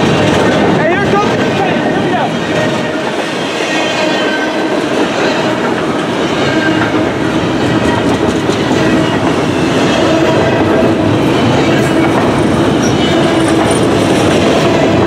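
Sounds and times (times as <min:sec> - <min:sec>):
freight train rumbling on rails: 0:00.0 - 0:15.0.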